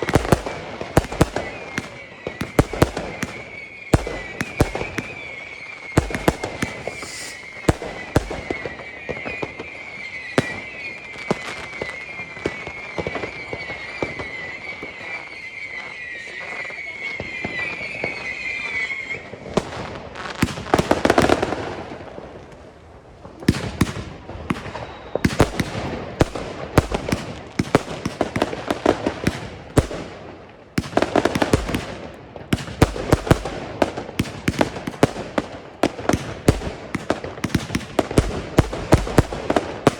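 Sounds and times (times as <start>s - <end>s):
firework pops: 0.0s - 5.3s, 6.0s - 9.4s
firework whistle: 0.0s - 21.6s, 23.5s - 30.0s
firework bangs and crackles: 0.0s - 39.9s.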